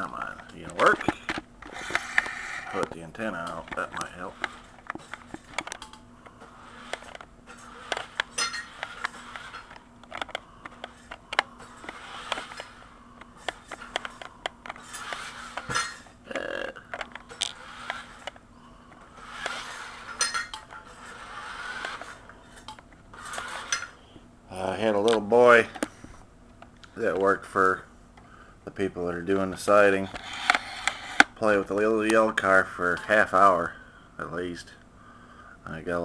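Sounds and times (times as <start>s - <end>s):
toy car motor whirring: 0.2s - 5.3s, 6.4s - 18.4s, 19.1s - 22.3s, 23.1s - 24.0s, 30.0s - 31.3s
plastic clicks knocks and scrapes: 0.4s - 15.9s, 30.1s - 31.4s.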